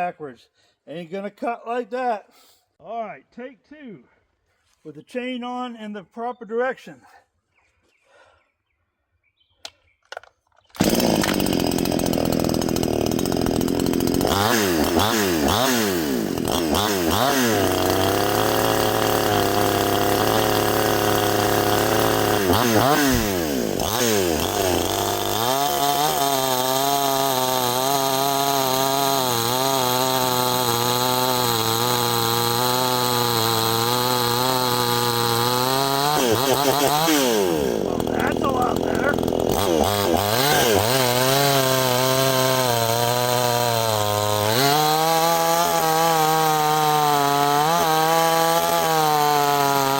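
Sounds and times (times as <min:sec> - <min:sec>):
chainsaw cutting wood: 0:09.8 - 0:49.9
chainsaw revving: 0:10.8 - 0:49.9.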